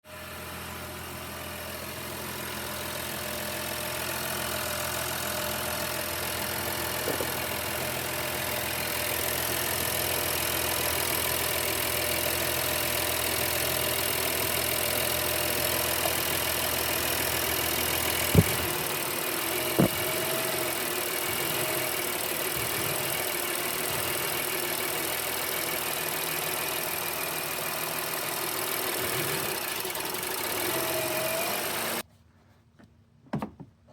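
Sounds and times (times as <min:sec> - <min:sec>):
car engine idling roughly: 0:00.1 - 0:32.0
sharp knocks: 0:18.3 - 0:18.7, 0:19.8 - 0:20.2.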